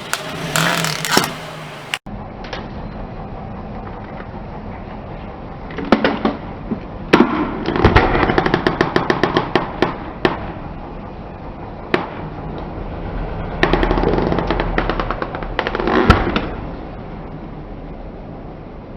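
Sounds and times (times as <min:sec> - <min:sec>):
tyre crushing crunchy objects: 0:00.0 - 0:02.0.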